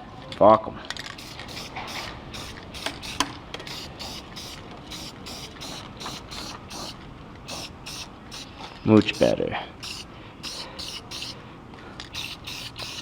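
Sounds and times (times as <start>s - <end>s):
spray paint can hissing: 1.1s - 11.4s, 12.0s - 13.0s.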